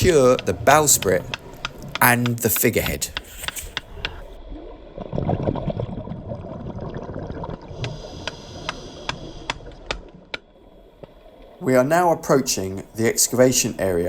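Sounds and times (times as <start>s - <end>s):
sharp clicks: 0.0s - 4.3s
underwater bubbles gurgling: 0.0s - 11.6s.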